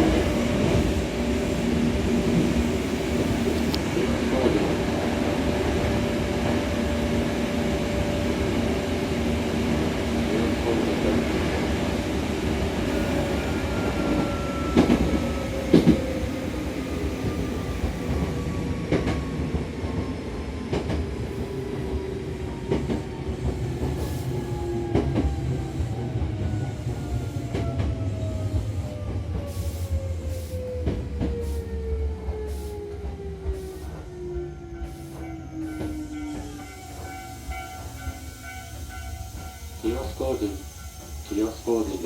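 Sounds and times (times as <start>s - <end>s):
low train rumble: 0.0s - 42.0s
rail-joint clicks: 3.2s - 4.7s.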